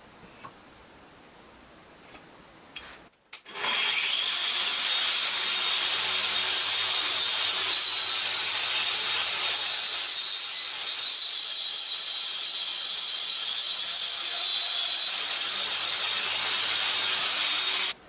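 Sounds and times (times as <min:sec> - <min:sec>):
power tool grinding: 0:03.5 - 0:18.0.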